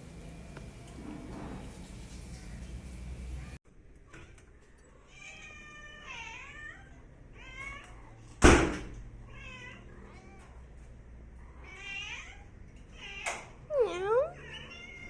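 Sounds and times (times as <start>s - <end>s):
cat meowing: 5.1s - 8.2s, 9.2s - 10.6s, 11.5s - 15.0s.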